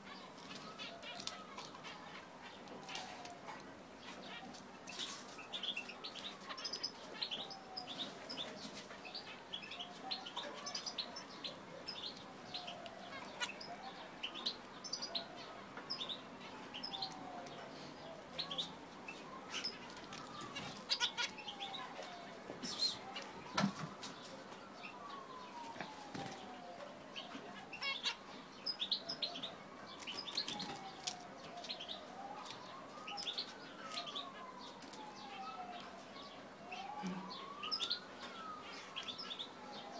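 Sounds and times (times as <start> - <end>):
finches chirping: 18.4 - 23.3, 27.2 - 29.4.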